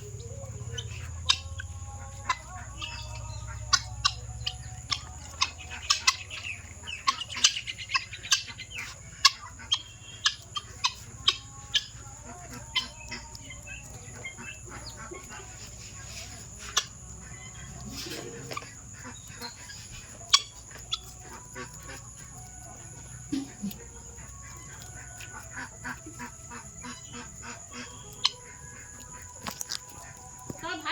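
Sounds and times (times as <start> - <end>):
guinea fowl calling: 0.0 - 30.9.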